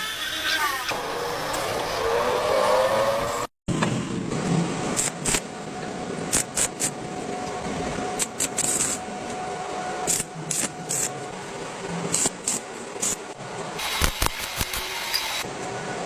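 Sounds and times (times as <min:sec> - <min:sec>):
sharp welding pops: 0:04.9 - 0:05.5, 0:06.3 - 0:07.0, 0:08.2 - 0:09.0, 0:10.1 - 0:11.1, 0:12.1 - 0:15.4
welding arc crackling hiss: 0:04.9 - 0:05.6, 0:06.3 - 0:07.2, 0:08.1 - 0:09.1, 0:10.1 - 0:11.1, 0:12.1 - 0:15.5.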